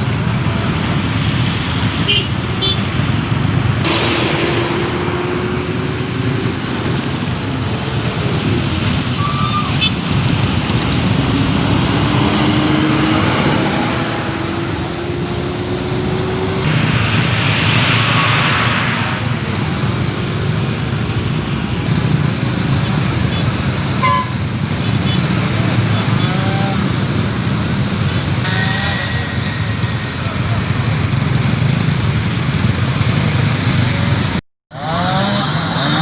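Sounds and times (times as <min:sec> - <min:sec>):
vehicle engines running: 0:00.0 - 0:36.0
engine note rising: 0:03.4 - 0:08.8, 0:10.4 - 0:22.2.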